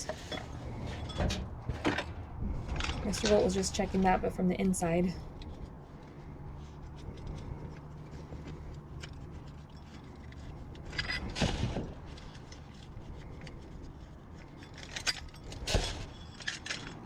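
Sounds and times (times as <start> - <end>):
metal scraping: 0.0 - 17.0
scrap metal clicking and rubbing: 5.3 - 17.0.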